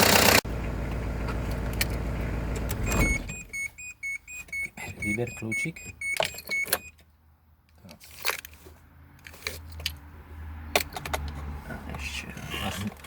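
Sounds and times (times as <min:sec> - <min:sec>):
short electronic beeps: 0:02.9 - 0:07.0
clicks and knocks of handling parts: 0:06.0 - 0:10.1, 0:10.7 - 0:12.1.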